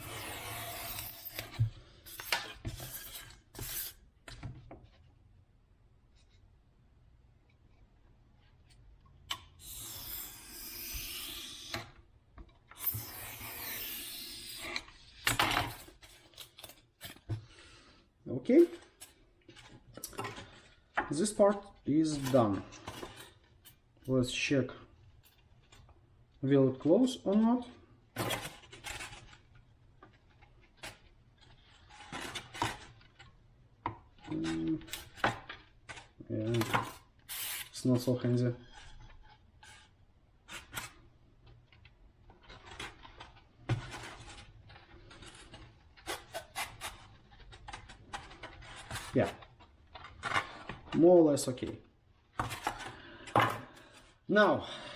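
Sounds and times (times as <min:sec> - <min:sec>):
rasp scraping foam block: 0:00.0 - 0:04.0, 0:09.6 - 0:12.0, 0:12.8 - 0:15.1
plastic parts rustling and knocking: 0:40.6 - 0:54.2.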